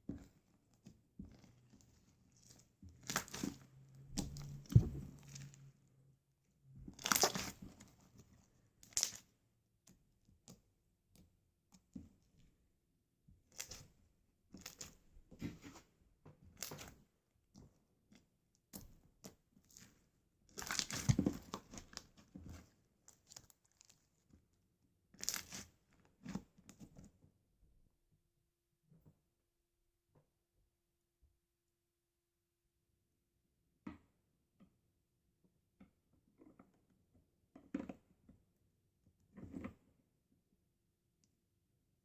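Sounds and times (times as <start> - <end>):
slime squelching and crackling: 0.2 - 5.7, 6.7 - 9.3, 13.4 - 15.1, 16.5 - 17.0, 18.7 - 24.2, 25.2 - 26.4.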